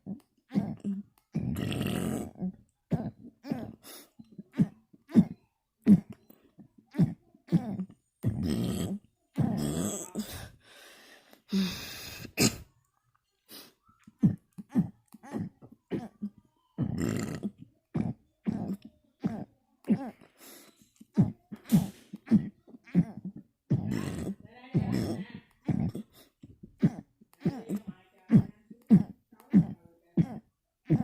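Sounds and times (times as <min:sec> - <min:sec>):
person burping: 0:00.5 - 0:03.8, 0:06.9 - 0:10.5, 0:11.5 - 0:12.6, 0:14.2 - 0:20.3, 0:21.1 - 0:31.0.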